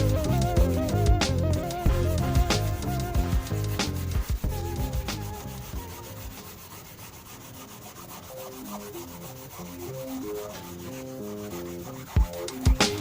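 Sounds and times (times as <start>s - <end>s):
cloth rubbing car paint: 0.0s - 13.0s
faint background music: 0.0s - 13.0s.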